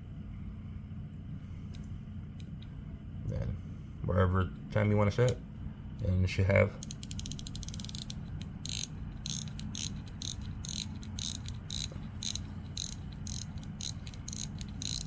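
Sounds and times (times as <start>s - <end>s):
watch winding ratchet clicking: 6.8s - 15.0s.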